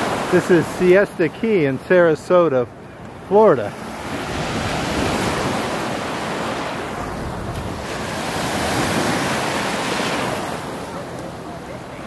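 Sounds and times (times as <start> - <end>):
surf washing up on beach: 0.0 - 2.5, 3.2 - 12.0
wind buffeting microphone: 4.0 - 10.2.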